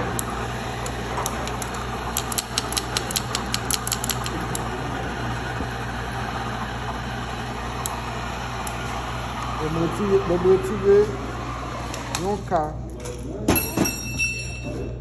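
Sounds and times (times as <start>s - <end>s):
rapid sharp clicks: 0.0s - 4.8s
low mechanical hum: 0.0s - 15.0s.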